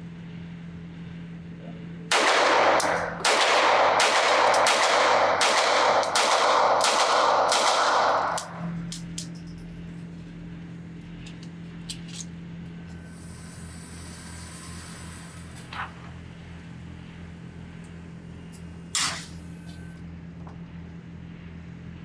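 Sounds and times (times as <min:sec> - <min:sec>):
pistol shots with echo: 0:02.1 - 0:08.8.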